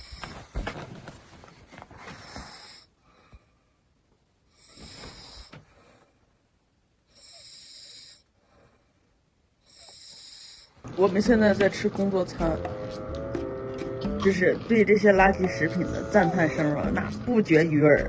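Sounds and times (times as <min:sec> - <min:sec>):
person snoring: 0:07.1 - 0:08.3, 0:09.6 - 0:10.8.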